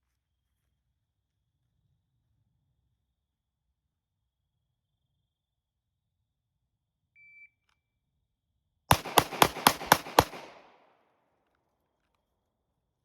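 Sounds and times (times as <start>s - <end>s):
echo of gunshots: 8.9s - 11.0s
pistol shots: 8.9s - 11.0s.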